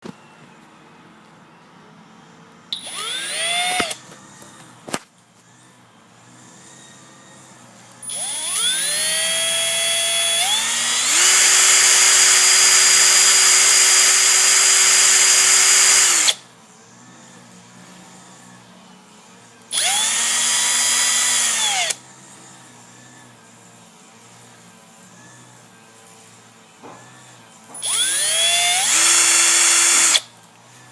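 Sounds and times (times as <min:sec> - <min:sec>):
electric drill running: 0:02.8 - 0:04.2, 0:08.0 - 0:16.4, 0:19.7 - 0:22.0, 0:27.8 - 0:30.3.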